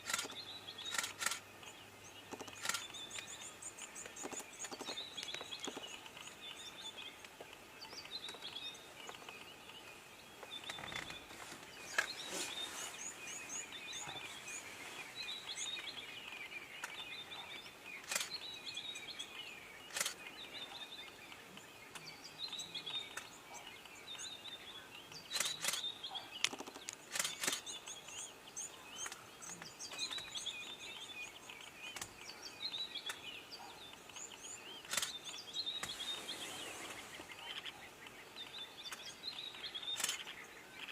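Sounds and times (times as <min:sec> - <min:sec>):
sharp clicks: 0:00.0 - 0:01.7, 0:02.3 - 0:03.3, 0:18.0 - 0:18.4, 0:19.9 - 0:20.2, 0:25.3 - 0:27.8, 0:34.8 - 0:36.0, 0:39.9 - 0:40.3
birds chirping: 0:00.0 - 0:40.9.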